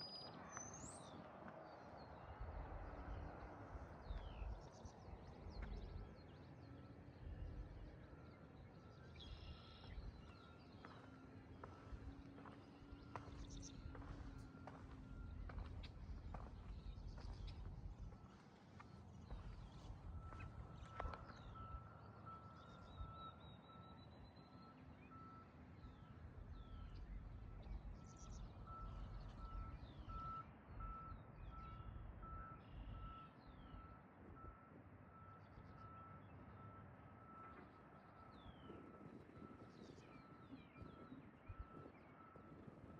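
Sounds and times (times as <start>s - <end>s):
bird chirps: 4.1s - 30.4s
equipment warning alarm beeping: 5.6s - 42.9s.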